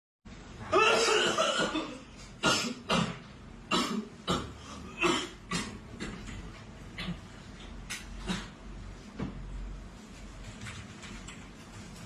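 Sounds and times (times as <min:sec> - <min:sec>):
person coughing hard: 0:00.7 - 0:05.8.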